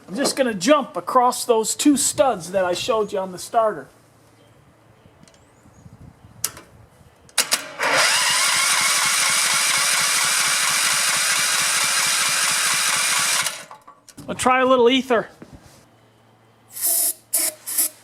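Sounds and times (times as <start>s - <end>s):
starter motor cranking engine: 7.4s - 13.8s.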